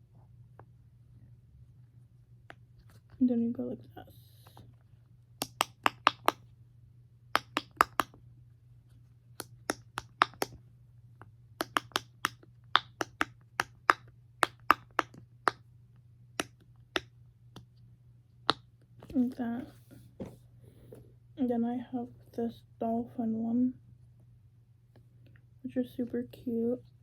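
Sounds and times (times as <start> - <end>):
fidget toy bubbles popping: 7.4 - 8.2.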